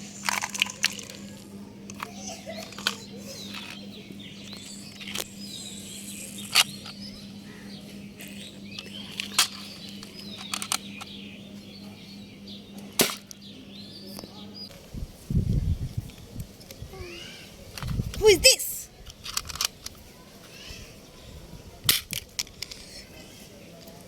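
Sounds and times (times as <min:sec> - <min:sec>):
steady low hum: 0:00.0 - 0:20.1.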